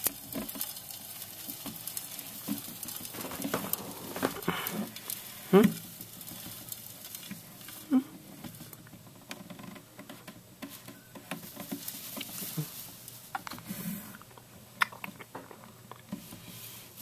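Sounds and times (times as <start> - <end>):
hamster scrabbling in bedding: 0.4 - 8.7, 10.0 - 14.1.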